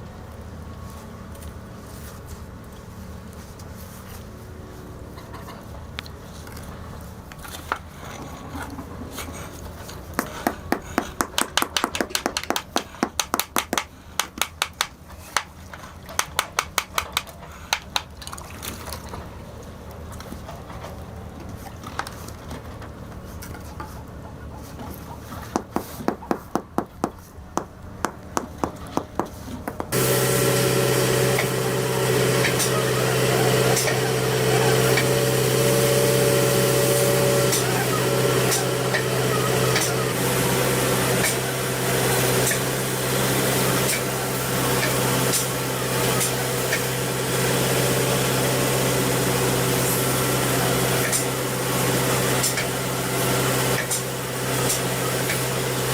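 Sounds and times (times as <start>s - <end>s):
low background hum: 0.0s - 51.8s
loud steady machine noise: 29.7s - 55.9s.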